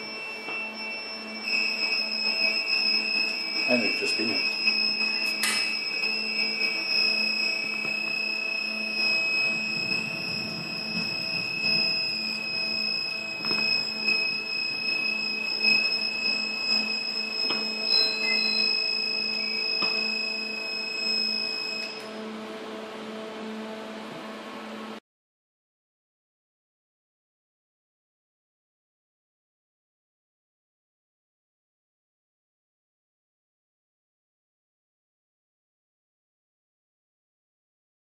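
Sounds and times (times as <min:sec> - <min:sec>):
electronic alarm high-pitched tone: 0:00.0 - 0:24.0.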